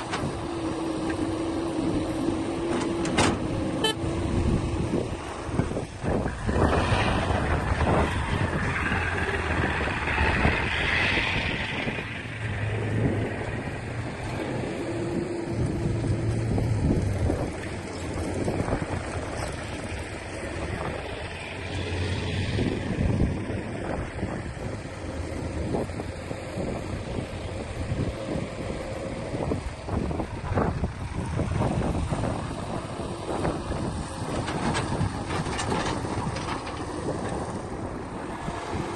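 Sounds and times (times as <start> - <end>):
heavy machine engine humming: 0.0 - 38.9.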